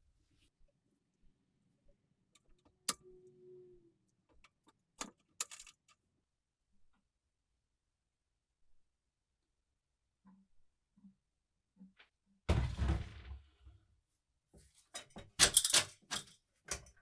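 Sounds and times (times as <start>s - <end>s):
metallic clicks and clinks: 15.0s - 16.9s.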